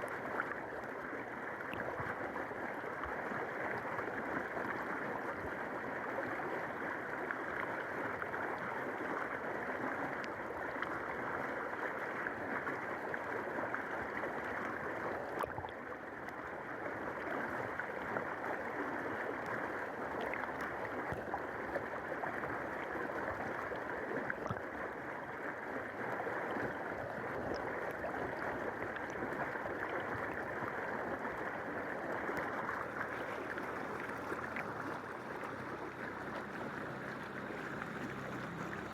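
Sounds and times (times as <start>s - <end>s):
river water rushing: 32.4s - 38.9s.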